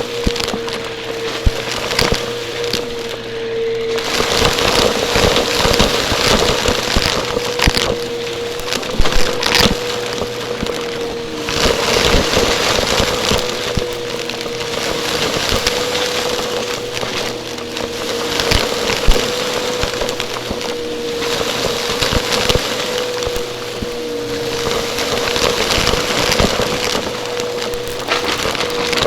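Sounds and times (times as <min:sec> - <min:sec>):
crackling and clicking: 0:00.0 - 0:29.0
vacuum cleaner running: 0:00.0 - 0:29.0.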